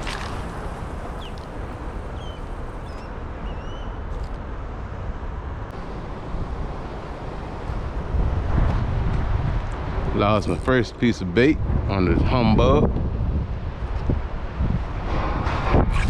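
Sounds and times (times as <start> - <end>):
wind rumbling on microphone: 0.0 - 16.0
faint high chirps: 2.2 - 4.0.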